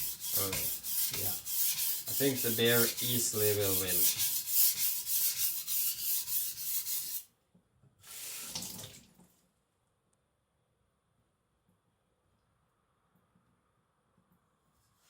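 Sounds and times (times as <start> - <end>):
blade scraping on whetstone: 0.0 - 7.3.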